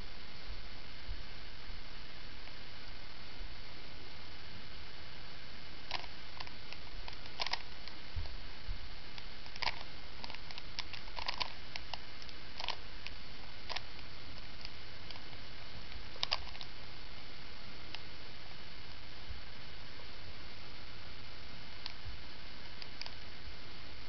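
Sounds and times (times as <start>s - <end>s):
steady hiss: 0.0s - 24.0s
plastic puzzle cube clicks: 5.9s - 8.0s, 9.2s - 15.3s, 16.2s - 16.7s.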